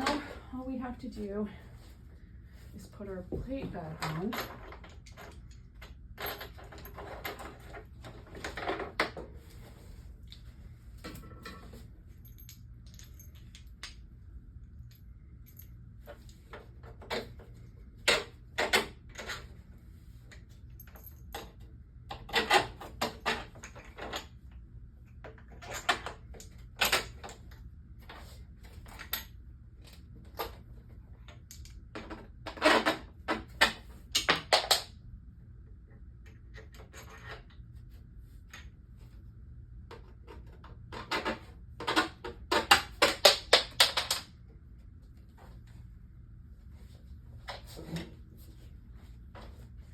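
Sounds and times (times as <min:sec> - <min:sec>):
metal parts clicking and clattering: 0:03.6 - 0:09.3, 0:11.0 - 0:14.1, 0:20.3 - 0:24.4, 0:25.2 - 0:34.9.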